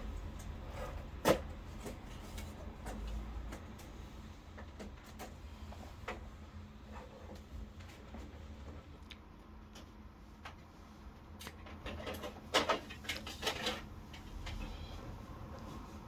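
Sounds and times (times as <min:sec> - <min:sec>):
plastic scraping and rustling: 0:11.4 - 0:14.9.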